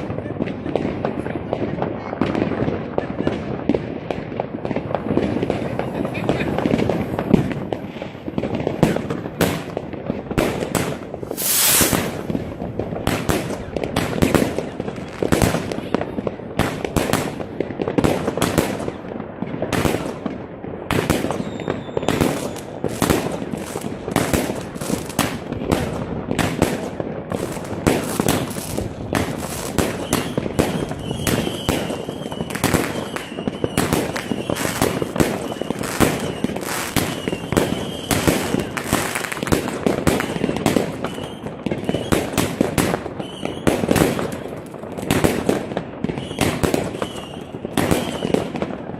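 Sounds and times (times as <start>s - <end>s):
fireworks and firecrackers banging: 0.0s - 48.9s.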